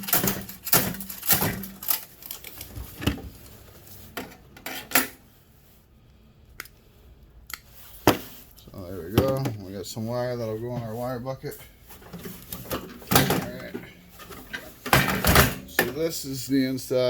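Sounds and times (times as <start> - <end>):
screwdriver and metal parts clinking: 0.0 - 2.7.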